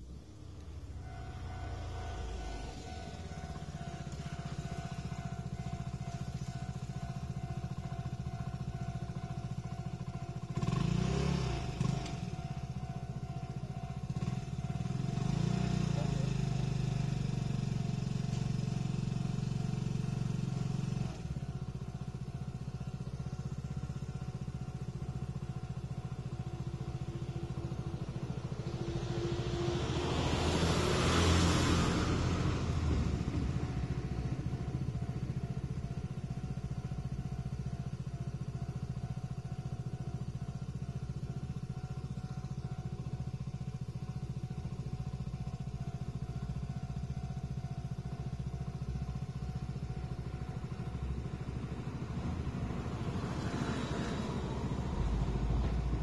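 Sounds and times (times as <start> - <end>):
vehicle passing by: 0.3 - 6.8, 26.4 - 35.8, 51.0 - 56.0.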